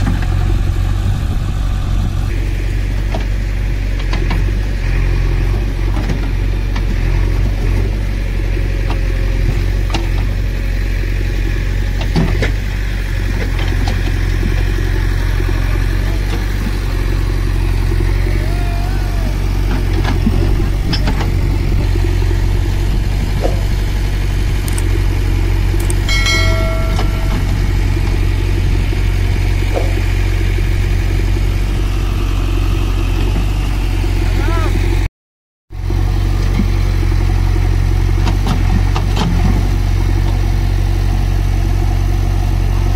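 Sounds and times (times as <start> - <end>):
diesel machinery engines droning: 0.0 - 35.1, 35.8 - 42.9
clicks and knocks: 25.8 - 28.2
short steady tone: 25.8 - 29.2.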